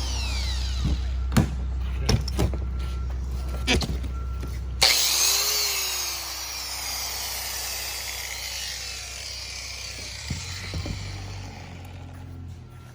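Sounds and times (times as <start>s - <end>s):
power tool whine winding down: 0.0s - 1.2s, 4.8s - 12.3s.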